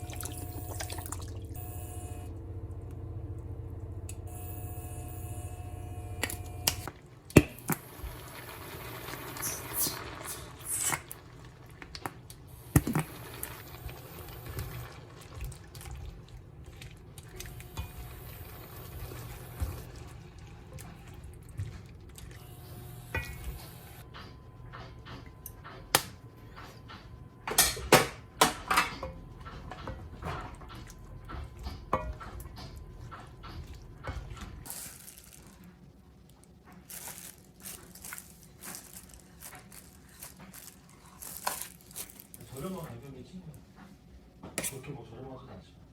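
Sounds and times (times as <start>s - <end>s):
water running from a tap: 0.0s - 2.3s, 17.3s - 20.1s.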